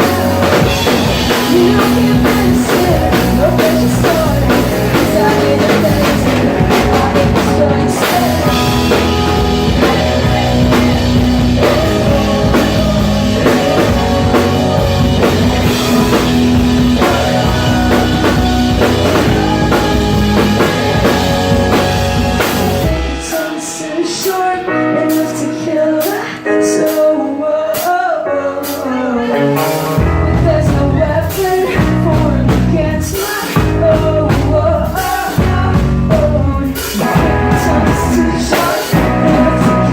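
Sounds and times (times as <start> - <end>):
bass guitar: 0.0 - 26.6, 28.6 - 39.9
drum kit: 0.0 - 39.9
electric guitars: 0.0 - 39.9
person singing: 0.0 - 39.9.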